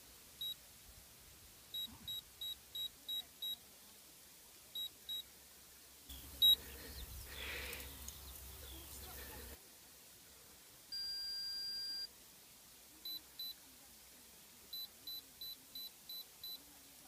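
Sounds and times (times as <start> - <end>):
short high beeps: 1.7 - 3.6, 6.4 - 6.6, 10.9 - 12.1.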